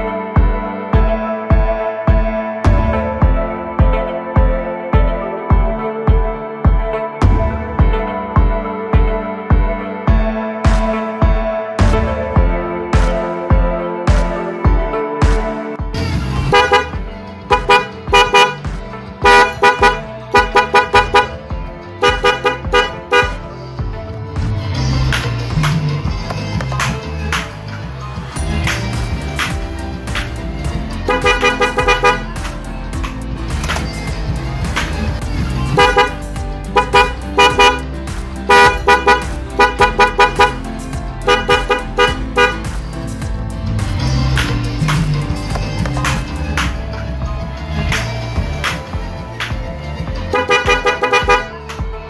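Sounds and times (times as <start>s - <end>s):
background music: 0.0s - 52.0s
scooter horn honks: 16.5s - 18.6s, 19.2s - 21.4s, 22.0s - 23.4s, 31.0s - 32.4s, 35.7s - 37.9s, 38.5s - 40.6s, 41.2s - 42.7s, 50.3s - 51.6s
scooter horn short beeps: 16.6s - 18.6s, 31.1s - 32.3s, 36.8s - 37.9s.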